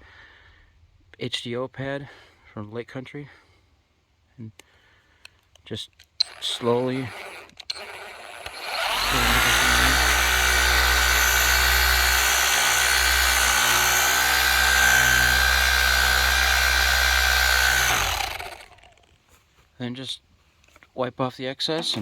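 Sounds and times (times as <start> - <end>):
electric polisher whine: 7.0 - 19.0.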